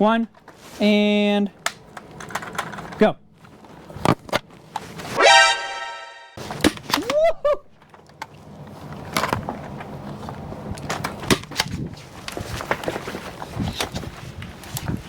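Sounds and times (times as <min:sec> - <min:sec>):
loud held tone: 0:05.2 - 0:06.4
sliding-pitch sounds: 0:05.2 - 0:06.4.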